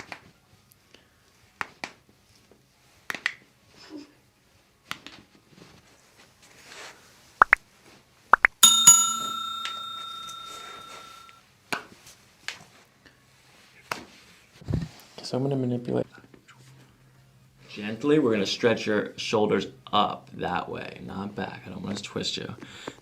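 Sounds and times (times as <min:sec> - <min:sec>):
bell ringing: 0:08.6 - 0:11.3.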